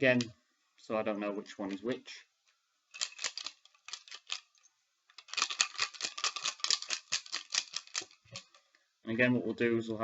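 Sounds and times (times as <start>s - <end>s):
staplers clattering in a container: 2.9s - 4.6s, 5.2s - 8.6s.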